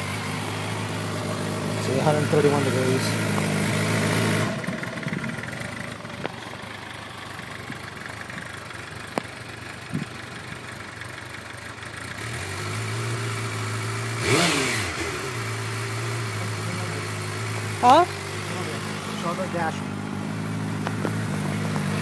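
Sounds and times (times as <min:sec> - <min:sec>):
motorcycle engine idling roughly: 0:00.0 - 0:14.3, 0:14.9 - 0:22.0
engine clicks: 0:03.1 - 0:03.7, 0:04.5 - 0:11.5, 0:20.7 - 0:22.0.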